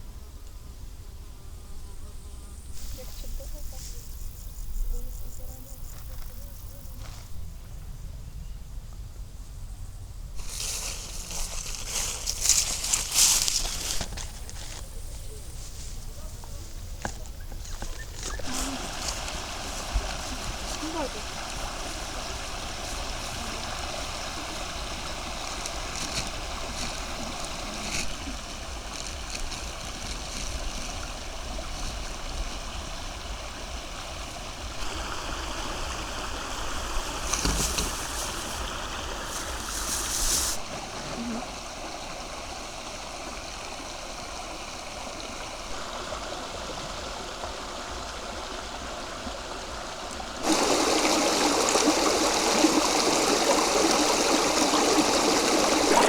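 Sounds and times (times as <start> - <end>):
river water flowing: 10.4 - 14.8, 16.4 - 56.0
rush of running water: 10.4 - 14.8, 16.0 - 56.0
water splashes: 16.4 - 56.0.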